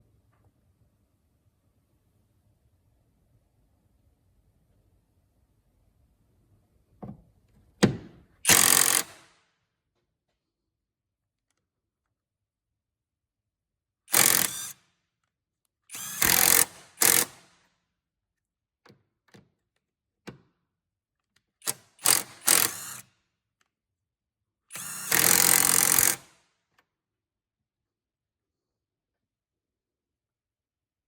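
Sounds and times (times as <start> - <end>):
impact driver bursts: 7.8 - 9.3, 14.1 - 14.8, 15.9 - 17.5, 21.7 - 23.1, 24.7 - 26.4.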